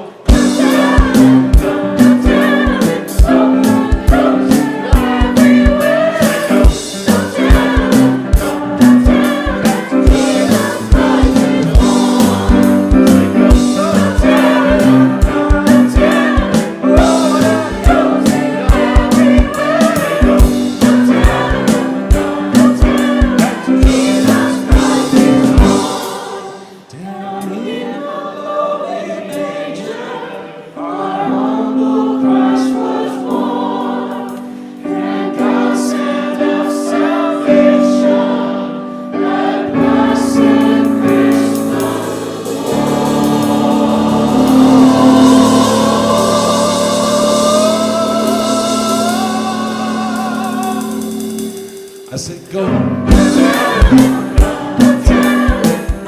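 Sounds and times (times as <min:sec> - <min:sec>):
gospel choir singing: 0:00.0 - 0:56.0
drum beat: 0:00.3 - 0:26.4, 0:40.6 - 0:49.6, 0:53.1 - 0:56.0.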